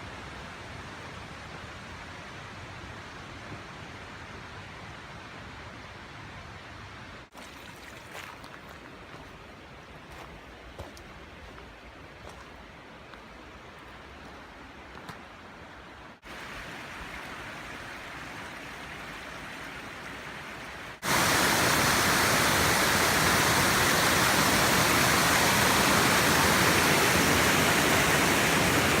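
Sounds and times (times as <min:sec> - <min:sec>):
waterfall rushing: 0:16.3 - 0:29.0.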